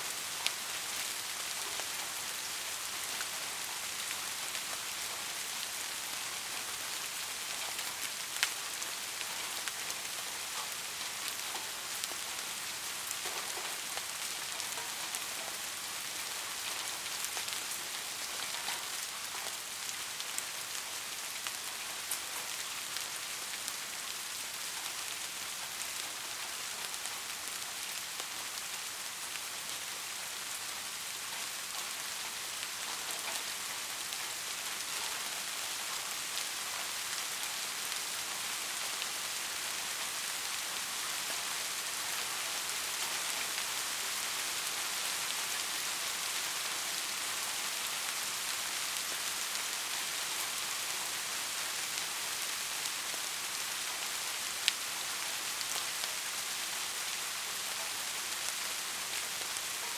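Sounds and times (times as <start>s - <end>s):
raindrops pattering: 0.0s - 59.9s
steady rain hiss: 0.0s - 59.9s.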